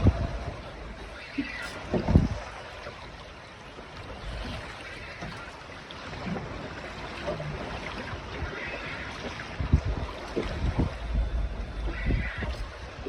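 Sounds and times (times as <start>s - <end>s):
waves lapping against boat hull: 0.0s - 13.0s.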